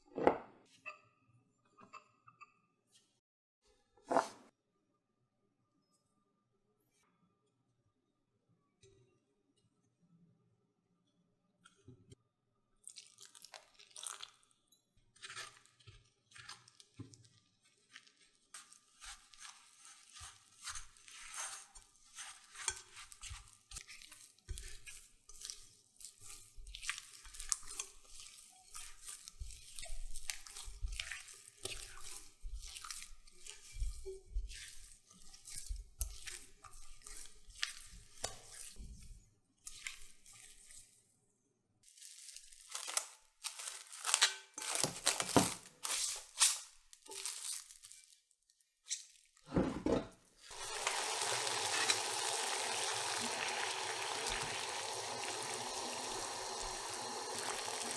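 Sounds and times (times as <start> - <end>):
food crunching and crinkling: 12.8 - 14.6, 15.2 - 38.6, 41.8 - 49.4, 50.4 - 57.9.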